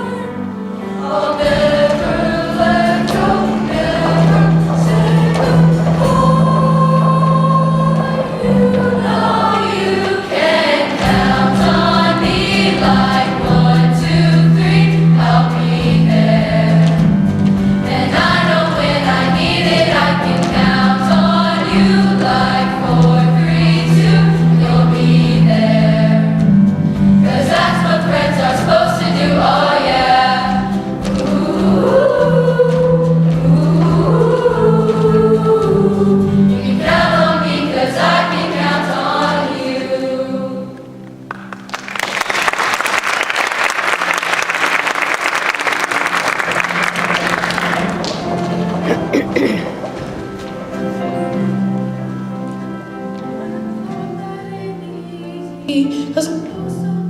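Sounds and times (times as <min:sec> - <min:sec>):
choir singing in parts: 0:00.0 - 0:41.1, 0:45.0 - 0:57.0
instrumental accompaniment: 0:00.0 - 0:42.5, 0:43.7 - 0:57.0
drum strokes: 0:01.2 - 0:36.0.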